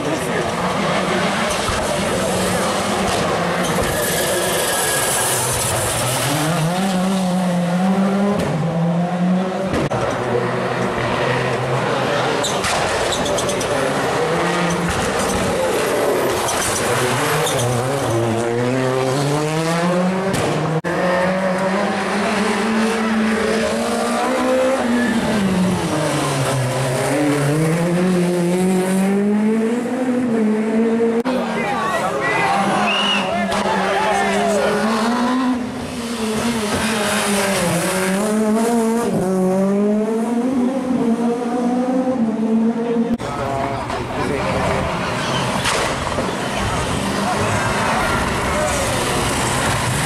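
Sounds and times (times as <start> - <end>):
rally car engine revving: 0.0 - 31.4, 32.3 - 50.0
tyre squeal: 3.6 - 5.9, 12.4 - 13.8, 16.4 - 17.9, 45.0 - 45.8.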